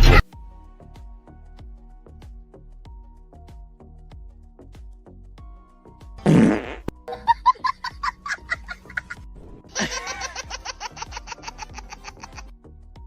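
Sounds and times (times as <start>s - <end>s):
faint background music: 0.0s - 13.0s
high-pitched laughter: 7.1s - 12.5s.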